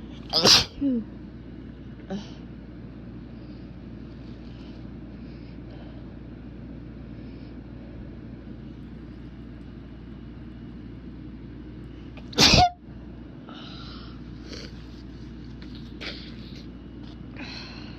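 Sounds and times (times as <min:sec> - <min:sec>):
low background hum: 0:00.0 - 0:17.9
person sneezing: 0:00.3 - 0:01.0, 0:12.2 - 0:12.8.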